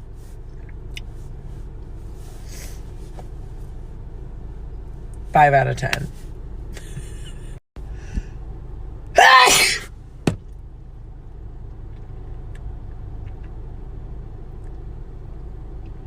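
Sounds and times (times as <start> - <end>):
steady low hum: 0.0 - 16.0
person sneezing loudly: 9.2 - 9.9.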